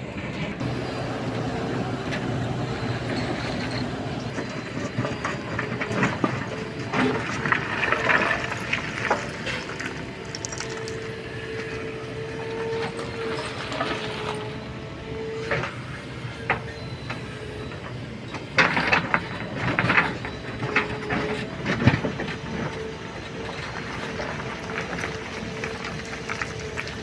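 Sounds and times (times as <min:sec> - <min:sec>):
diesel engine and hydraulics whine: 0:00.0 - 0:27.0
steel bucket scraping stones: 0:02.1 - 0:11.8.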